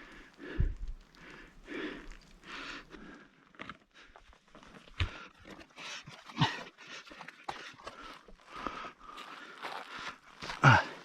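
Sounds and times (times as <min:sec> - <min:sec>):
heavy breathing: 0:00.0 - 0:11.0
footsteps crunching on loose rock: 0:03.5 - 0:11.0.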